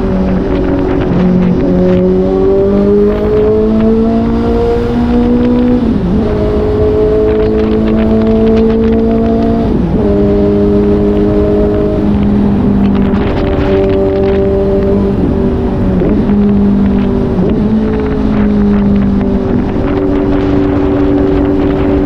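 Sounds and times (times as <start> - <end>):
motorcycle engine revving: 0.0 - 22.0.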